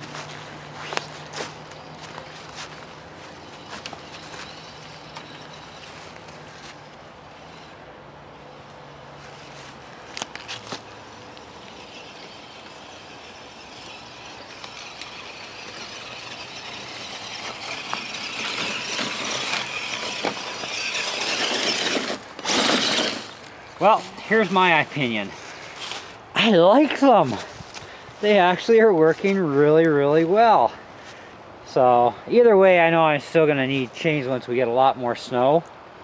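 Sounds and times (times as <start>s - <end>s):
toy truck motor whining: 0.9s - 23.6s.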